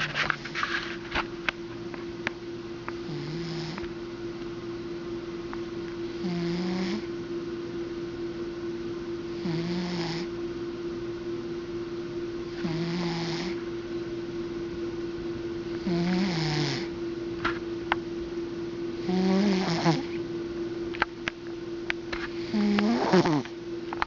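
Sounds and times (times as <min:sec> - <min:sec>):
steady hum: 0:00.0 - 0:24.0
cat snoring: 0:03.0 - 0:03.8, 0:06.1 - 0:07.1, 0:09.4 - 0:10.3, 0:12.6 - 0:13.6, 0:15.8 - 0:16.9, 0:19.0 - 0:20.2, 0:22.4 - 0:23.5.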